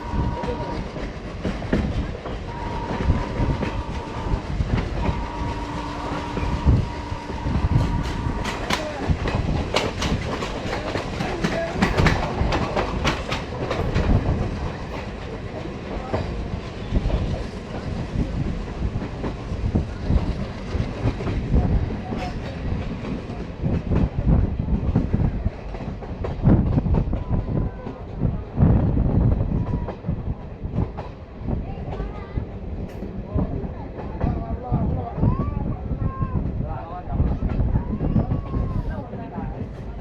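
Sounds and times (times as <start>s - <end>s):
train wheels clattering over rail joints: 0.0s - 27.3s
low train rumble: 0.0s - 40.0s.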